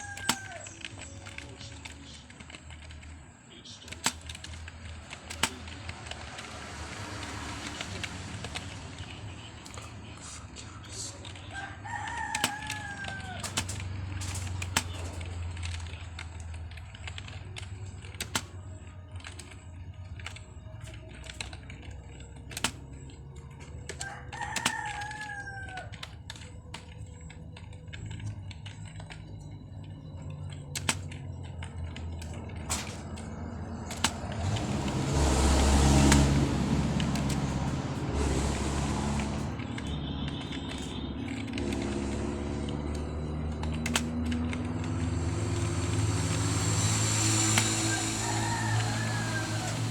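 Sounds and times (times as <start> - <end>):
rooster crowing: 0.0 - 1.1, 11.0 - 15.1, 23.9 - 26.5, 44.9 - 49.9
sharp clicks: 0.0 - 49.9
loud rushing noise: 44.7 - 49.9.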